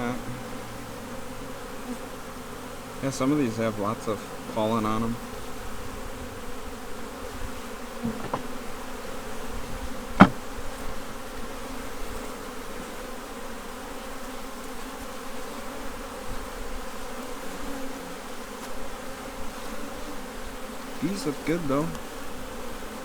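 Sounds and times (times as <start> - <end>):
bees buzzing: 0.0 - 23.0
sharp knock: 8.0 - 8.5, 10.2 - 10.4.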